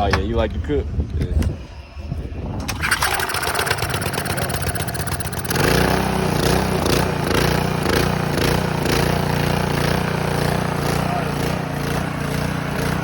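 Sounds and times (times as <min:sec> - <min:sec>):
pressure washer engine running: 0:02.7 - 0:13.0.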